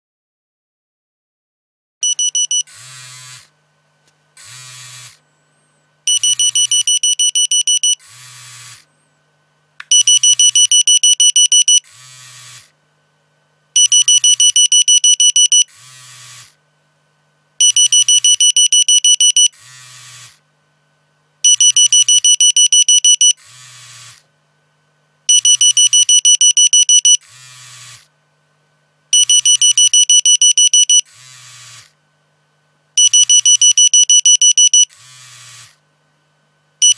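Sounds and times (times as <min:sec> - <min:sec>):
phone alarm beeping: 0:02.0 - 0:02.7, 0:06.1 - 0:08.0, 0:09.9 - 0:11.8, 0:13.8 - 0:15.7, 0:17.6 - 0:19.6, 0:21.5 - 0:23.4, 0:25.3 - 0:27.2, 0:29.2 - 0:31.1, 0:33.0 - 0:35.0
quiet phone buzz: 0:02.0 - 0:03.5, 0:04.4 - 0:09.1, 0:09.9 - 0:12.6, 0:13.8 - 0:16.6, 0:17.6 - 0:20.3, 0:21.4 - 0:24.3, 0:25.3 - 0:28.1, 0:29.1 - 0:31.9, 0:33.0 - 0:35.8.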